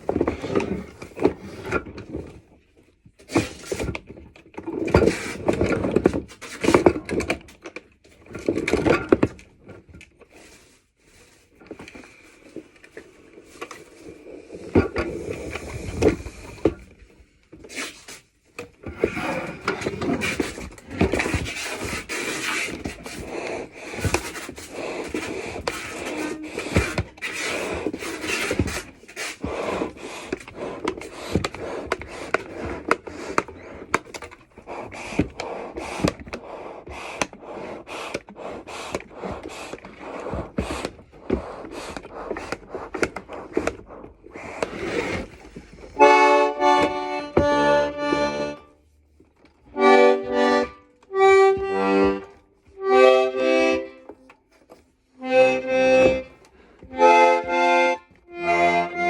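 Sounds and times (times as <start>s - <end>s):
accordion buttons clacking: 45.9s - 48.8s, 49.7s - 59.0s
accordion bellows rushing air: 46.0s - 48.7s
accordion chords: 46.0s - 48.8s, 49.7s - 54.2s, 55.1s - 59.0s.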